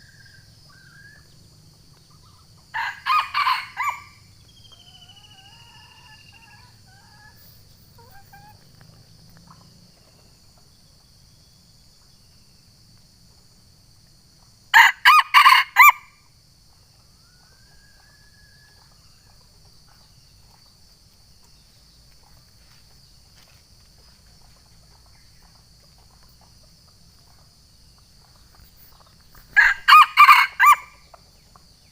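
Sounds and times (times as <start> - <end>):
high insect drone: 0.0 - 31.9
rooster crowing: 2.7 - 4.3, 14.7 - 16.1, 29.6 - 31.1.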